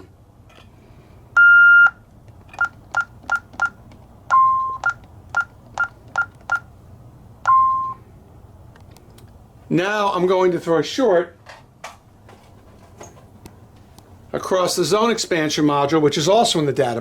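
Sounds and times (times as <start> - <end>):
alarm keypad beeping: 1.4 - 2.0, 2.6 - 6.7, 7.4 - 8.0.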